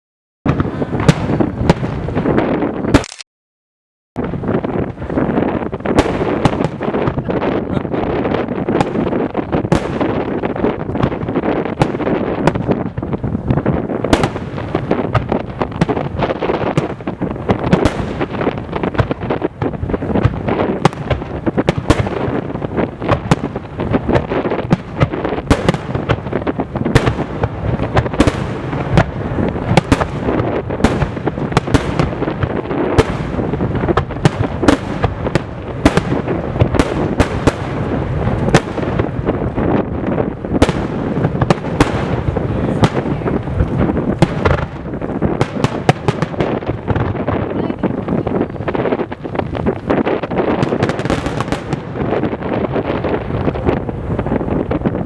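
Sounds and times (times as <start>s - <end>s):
continuous rumbling boom: 0.5s - 3.1s, 4.2s - 55.0s
firework shells bursting: 4.4s - 55.0s.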